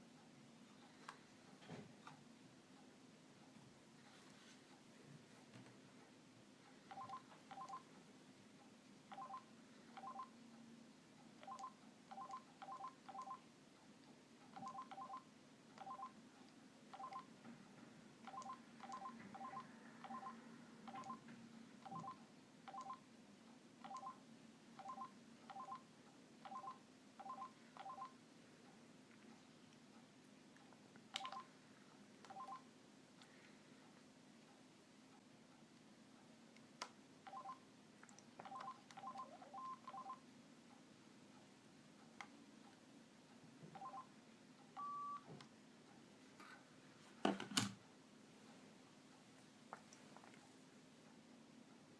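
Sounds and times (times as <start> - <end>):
faint steady hum: 0.0 - 51.9
phone keypad beeps: 6.9 - 7.9, 9.1 - 10.3, 11.4 - 13.4, 14.6 - 16.2, 16.9 - 17.3, 18.3 - 21.2, 21.8 - 23.0, 23.8 - 24.2, 24.8 - 28.2, 31.2 - 31.5, 32.3 - 32.7, 37.2 - 37.6, 38.4 - 40.2, 43.7 - 44.1, 44.8 - 45.3.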